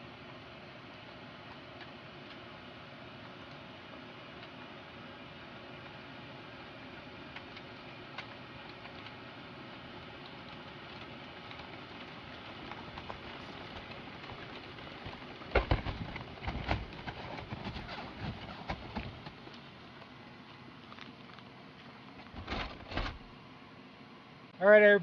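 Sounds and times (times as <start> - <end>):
irregular knocks and thumps: 13.0 - 19.4.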